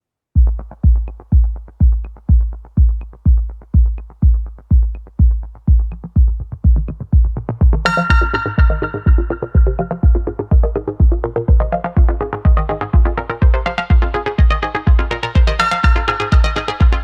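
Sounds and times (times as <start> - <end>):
deep kick drum: 0.4 - 17.0
bright synth chord: 7.9 - 10.4.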